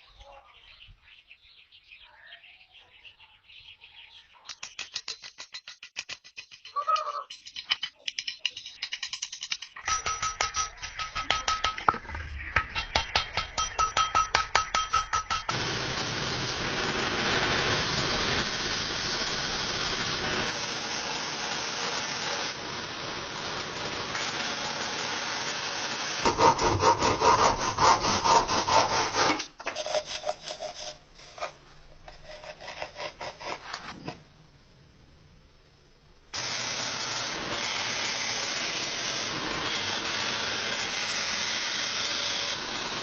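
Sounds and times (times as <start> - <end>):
hand tool scraping: 4.5 - 15.8, 23.6 - 34.2.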